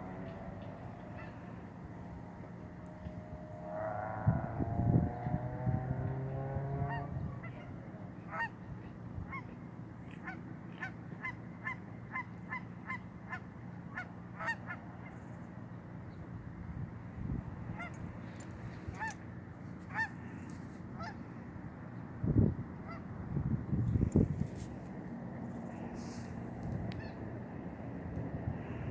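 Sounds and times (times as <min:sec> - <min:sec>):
geese honking: 0:19.9 - 0:20.2, 0:21.0 - 0:21.2.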